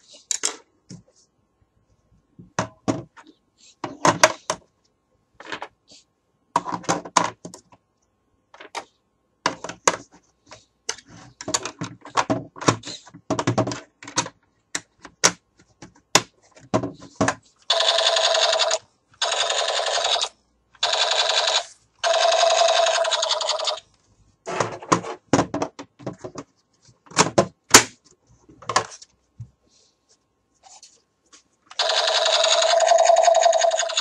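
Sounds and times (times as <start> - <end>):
electronic toy gun buzzing bursts: 17.7 - 23.8, 31.8 - 34.0
plastic toy clicks and knocks: 31.7 - 34.0.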